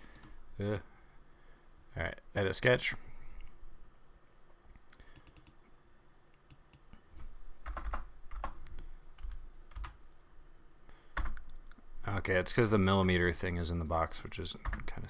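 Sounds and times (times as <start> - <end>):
computer keyboard typing: 5.1 - 5.6, 7.6 - 8.6, 9.2 - 10.0, 11.2 - 11.6, 14.6 - 15.0.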